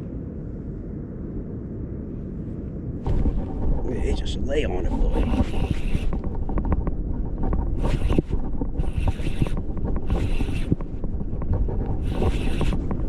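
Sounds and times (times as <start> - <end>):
wind buffeting microphone: 0.0 - 13.0
water around wading person: 3.0 - 13.0
pulsing hiss: 3.1 - 6.2, 12.0 - 12.8.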